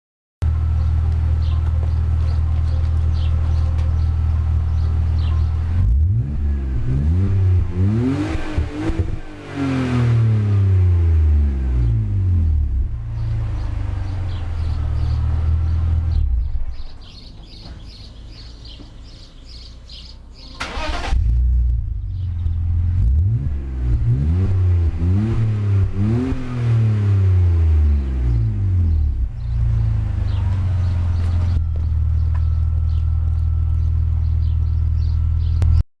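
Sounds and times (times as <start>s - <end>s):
car engine idling and revving: 0.4s - 35.8s
faint birds chirping: 0.5s - 7.3s, 11.6s - 21.0s, 21.8s - 23.1s, 27.8s - 35.8s.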